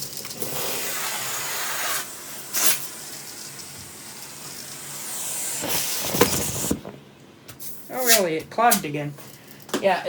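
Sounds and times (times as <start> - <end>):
vacuum hose sucking air: 0.4 - 6.8.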